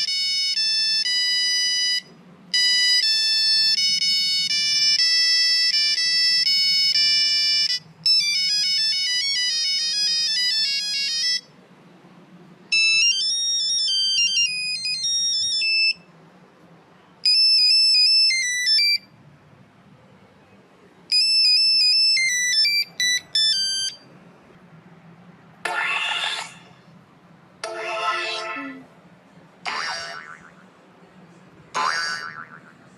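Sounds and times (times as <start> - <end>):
electronic phone ringtones: 0.0 - 11.5, 12.7 - 16.1, 17.2 - 19.2, 21.1 - 24.1.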